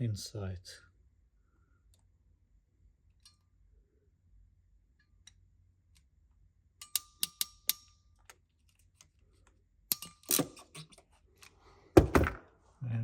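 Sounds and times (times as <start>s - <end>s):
ratcheting crimping tool clicking: 6.8s - 8.4s.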